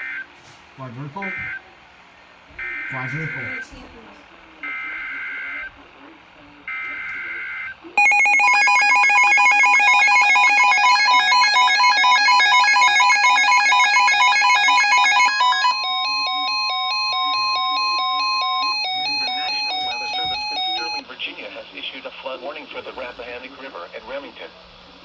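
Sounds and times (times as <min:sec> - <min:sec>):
rapid pulsing alarm beeps: 0:01.2 - 0:01.6, 0:02.6 - 0:03.7, 0:04.6 - 0:05.7, 0:06.7 - 0:21.0
two-tone warble alarm: 0:02.6 - 0:03.6, 0:06.7 - 0:21.0.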